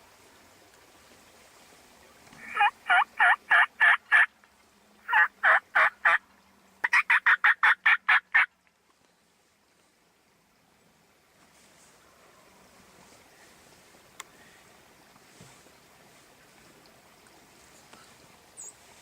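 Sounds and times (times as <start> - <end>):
turkey yelping: 2.4 - 4.3, 5.1 - 6.2, 6.8 - 8.5.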